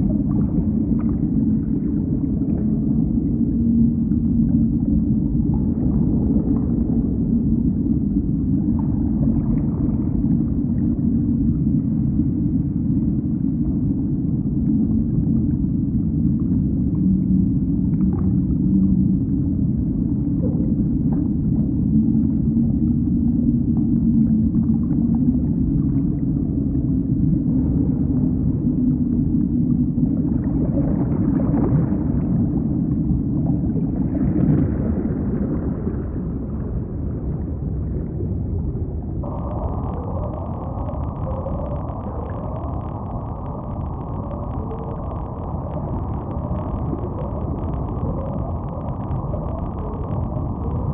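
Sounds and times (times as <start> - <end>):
deep underwater rumble: 0.0 - 50.9
faint wavering low tones: 38.6 - 50.9
rushing water noise: 39.2 - 50.9.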